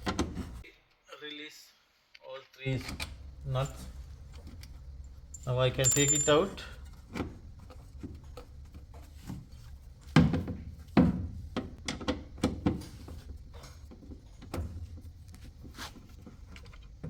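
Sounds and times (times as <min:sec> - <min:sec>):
clicks and knocks of hands working: 0:06.8 - 0:17.0.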